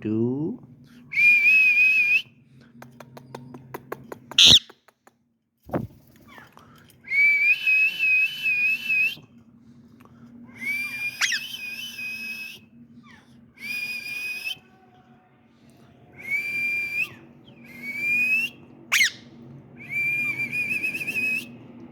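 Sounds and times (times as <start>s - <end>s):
parrot whistling: 4.4s - 4.7s, 10.6s - 14.7s, 16.2s - 21.6s.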